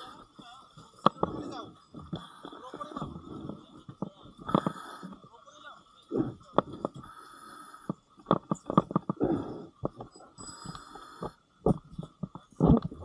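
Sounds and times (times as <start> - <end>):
sharp clicks and knocks: 7.9 - 9.2.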